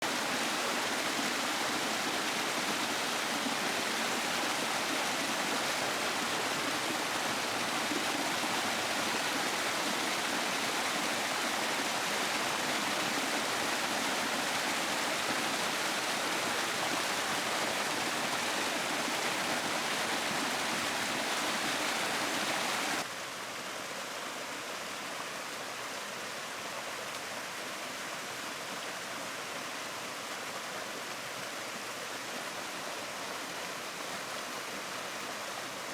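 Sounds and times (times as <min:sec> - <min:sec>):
river water rushing: 0:00.0 - 0:25.8.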